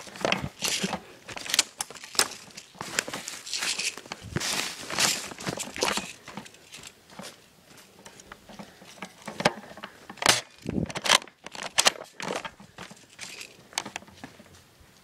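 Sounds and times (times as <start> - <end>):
footsteps crunching dry leaves: 0.0 - 8.0.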